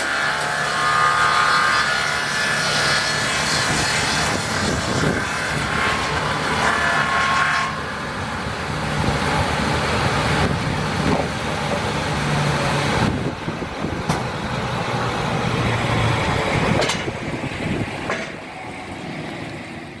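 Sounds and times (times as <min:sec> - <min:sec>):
circular saws cutting timber: 0:00.0 - 0:13.2.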